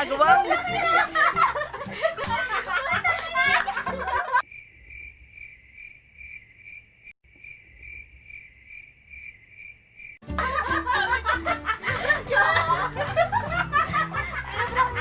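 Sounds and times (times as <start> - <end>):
cricket chirping: 4.4 - 10.2.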